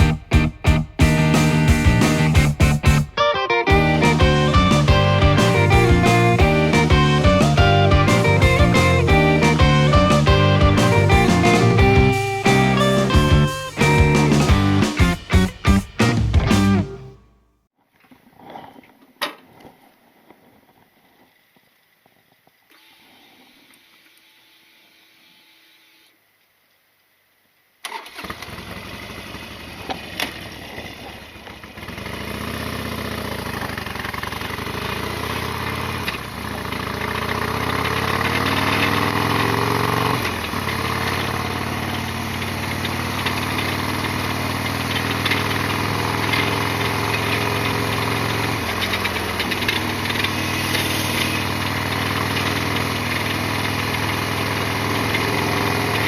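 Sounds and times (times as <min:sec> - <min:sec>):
motorcycle engine idling: 0:28.5 - 0:56.0.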